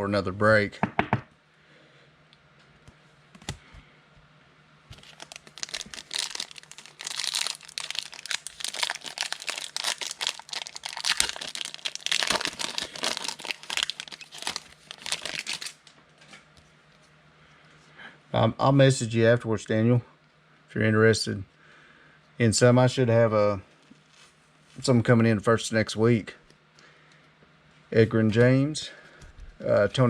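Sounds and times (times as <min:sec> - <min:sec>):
foil pack crinkling: 0:04.9 - 0:15.9.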